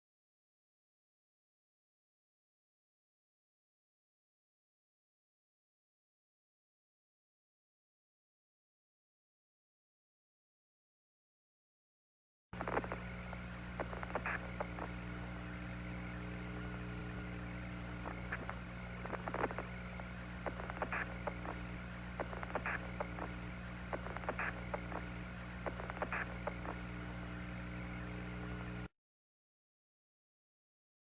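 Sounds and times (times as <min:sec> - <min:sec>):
electrical hum and static: 0:12.6 - 0:28.9
radio crackles and noise bursts: 0:12.6 - 0:28.9.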